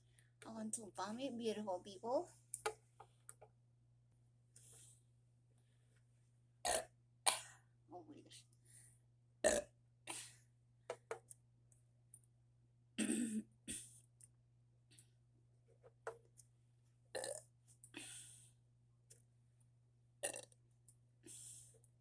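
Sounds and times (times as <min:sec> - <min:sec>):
woman burping: 0:09.5 - 0:09.7, 0:13.0 - 0:13.9.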